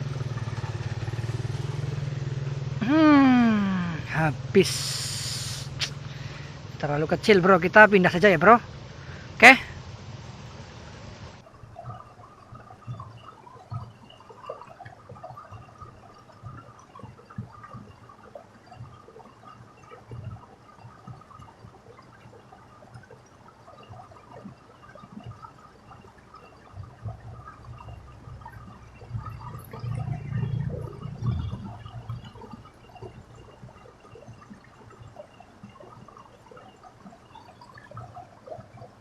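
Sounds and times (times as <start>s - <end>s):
water trickling and gurgling: 0.0s - 39.0s
low rumble: 26.9s - 32.8s.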